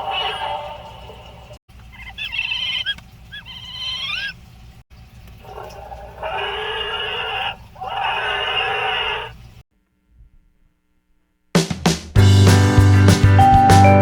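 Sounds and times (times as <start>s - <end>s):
warbling chirping animal call: 0.0s - 4.7s, 5.4s - 9.6s
long animal bleats: 5.5s - 9.4s.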